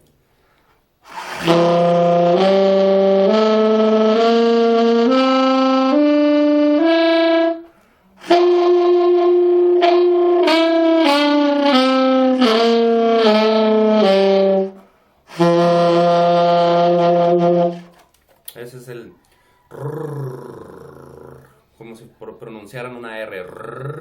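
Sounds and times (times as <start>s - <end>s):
saxophone with tongue growl: 1.1s - 18.0s, 19.7s - 21.6s, 23.4s - 24.0s.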